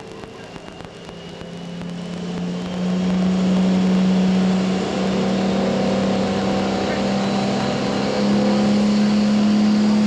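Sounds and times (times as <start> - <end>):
diesel engine revving: 2.0 - 10.0.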